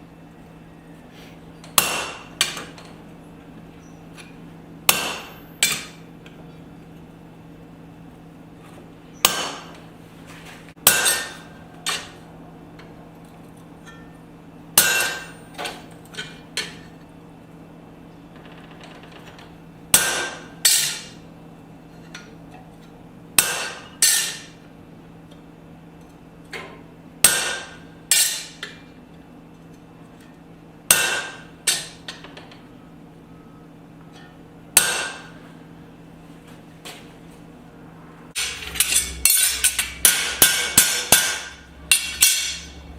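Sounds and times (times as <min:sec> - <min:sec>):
steady low hum: 0:00.0 - 0:18.6, 0:19.2 - 0:42.9
hammer striking steel on anvil: 0:01.8 - 0:02.8, 0:04.9 - 0:06.0, 0:09.2 - 0:09.8, 0:10.8 - 0:12.2, 0:14.8 - 0:16.8, 0:19.9 - 0:21.2, 0:23.4 - 0:24.6, 0:27.2 - 0:28.8, 0:30.9 - 0:32.2, 0:34.2 - 0:35.4, 0:38.3 - 0:42.9.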